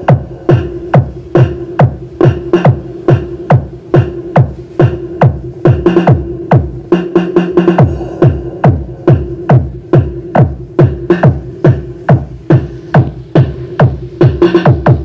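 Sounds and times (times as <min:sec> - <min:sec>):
deep kick drums: 0:00.0 - 0:15.0
held synth note: 0:07.8 - 0:09.2.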